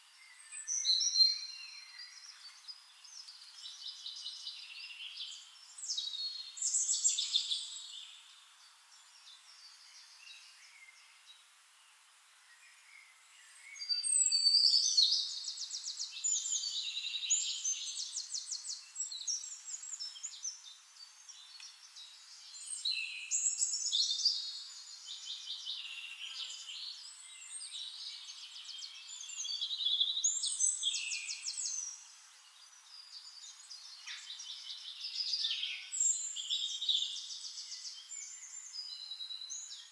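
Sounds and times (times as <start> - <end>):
songbirds singing: 0.0 - 39.9.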